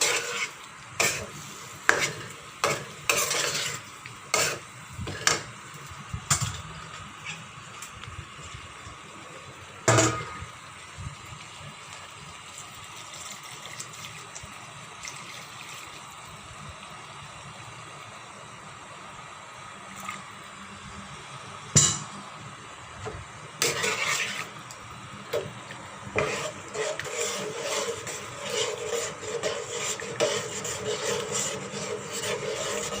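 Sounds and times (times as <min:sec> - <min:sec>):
spoon scraping a cooking pan: 0:00.0 - 0:05.5, 0:23.6 - 0:25.5, 0:26.1 - 0:33.0
cooking liquid hissing: 0:00.0 - 0:33.0.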